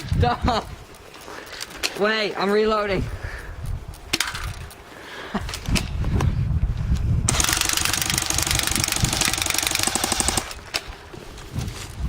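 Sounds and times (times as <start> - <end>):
gun handling clicks: 3.9 - 4.8
rapid automatic gunfire: 7.3 - 10.6.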